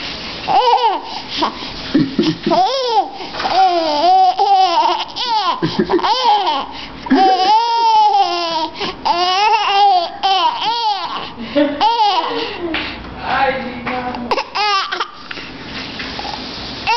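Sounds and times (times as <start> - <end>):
baby laughing: 0.5 - 12.8, 14.3 - 15.3.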